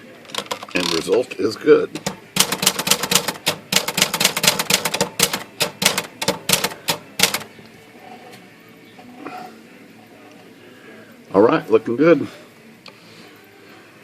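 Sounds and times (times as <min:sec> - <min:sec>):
typewriter keystroke clacks: 0:00.3 - 0:01.0, 0:02.0 - 0:07.5.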